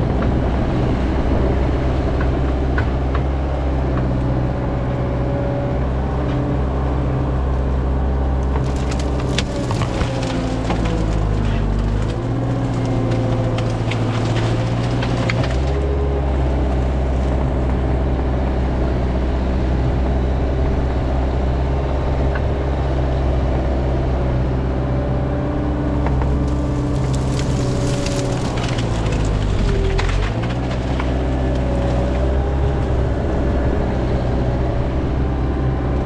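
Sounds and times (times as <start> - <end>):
excavator diesel engine under load: 0.0 - 36.0
wood cracking and splintering: 1.8 - 19.6, 25.4 - 36.0.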